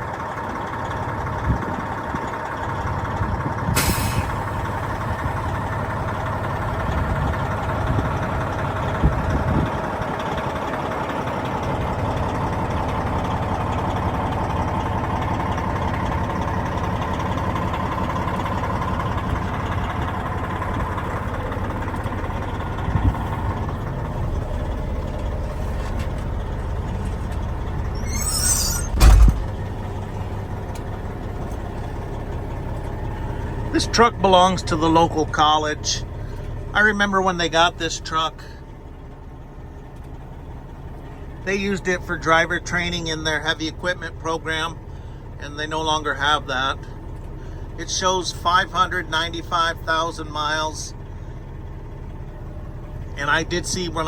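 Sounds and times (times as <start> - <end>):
diesel truck engine running: 0.0 - 54.0
air brake hiss with thump: 3.8 - 4.4, 28.0 - 29.5.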